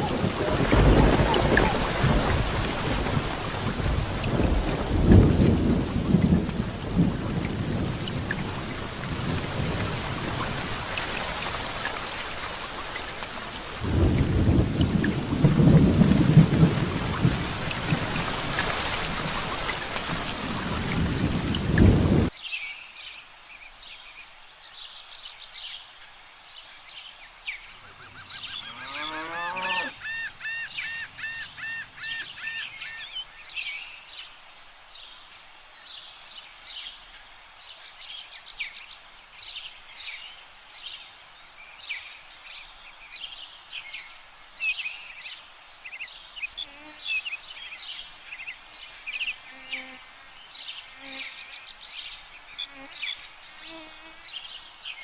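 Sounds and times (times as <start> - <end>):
thunder rolling: 0.0 - 10.9, 13.8 - 22.3
heavy rain: 0.0 - 22.4
birds chirping: 27.6 - 34.3.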